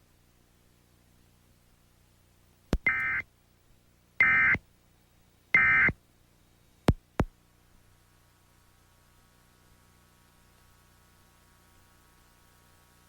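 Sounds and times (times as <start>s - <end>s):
buzzing digital data tone: 2.9s - 3.2s, 4.2s - 4.6s, 5.6s - 5.9s.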